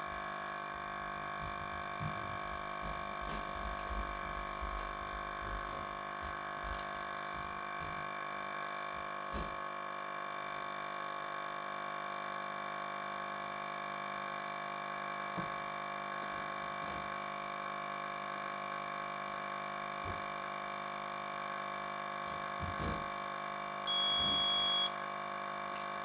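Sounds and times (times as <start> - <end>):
steady hum of held tones: 23.8 - 25.2.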